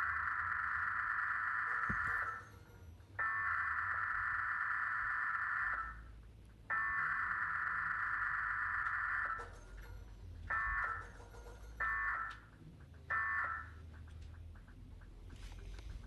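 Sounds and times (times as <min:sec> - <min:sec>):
emergency alert data bursts: 0:00.0 - 0:09.6, 0:10.4 - 0:11.2, 0:11.8 - 0:14.2.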